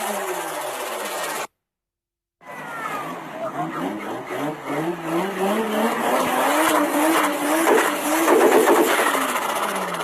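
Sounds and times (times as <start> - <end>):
car engine revving: 2.7 - 10.0.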